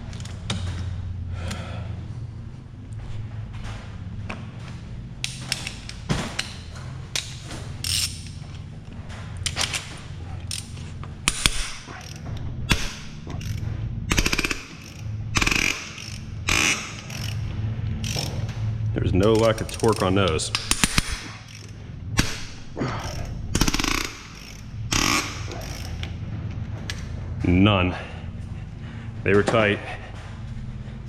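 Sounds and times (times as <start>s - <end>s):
hand ratchet clicking: 5.2s - 8.4s, 10.4s - 18.5s, 19.2s - 26.2s
metal tools clanking: 15.9s - 21.8s.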